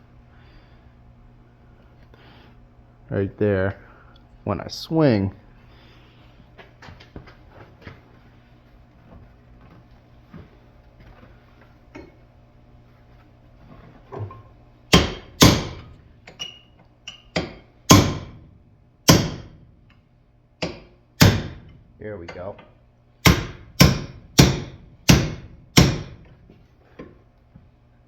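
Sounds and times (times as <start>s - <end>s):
hammer striking steel punch: 14.9s - 18.4s, 19.0s - 19.7s, 20.6s - 21.8s, 23.2s - 26.3s.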